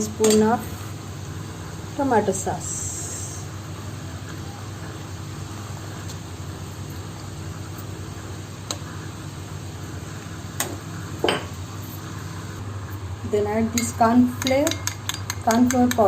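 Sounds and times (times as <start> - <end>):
kitchen fan humming: 0.0 - 16.0
spoon clinking against pan: 13.8 - 16.0.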